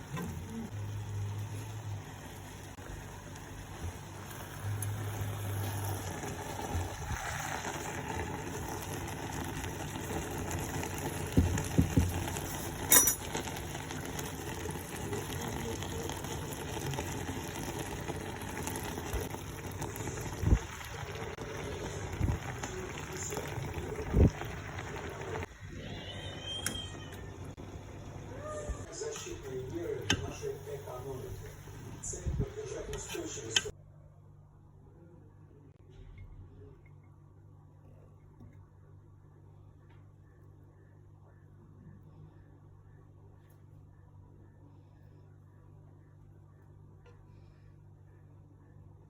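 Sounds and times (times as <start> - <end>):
food bubbling and sizzling in a pot: 0.0 - 33.8.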